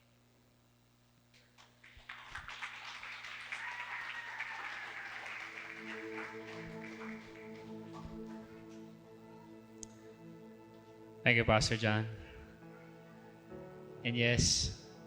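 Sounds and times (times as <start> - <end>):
congregation applauding: 1.6 - 8.8.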